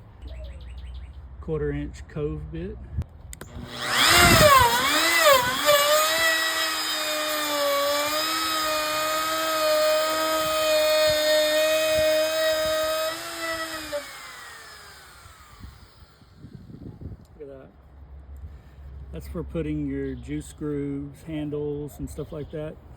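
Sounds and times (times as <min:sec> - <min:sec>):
wood router whining: 0:03.4 - 0:16.6.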